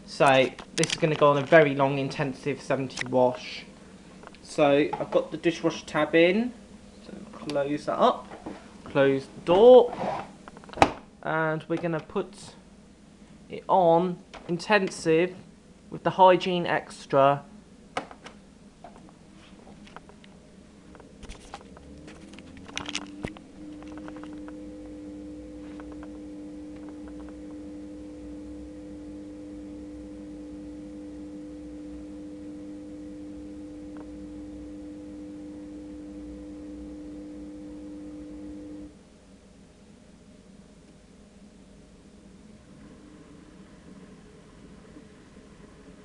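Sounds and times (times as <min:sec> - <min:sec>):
dishwasher pump motor humming: 0:21.0 - 0:39.0.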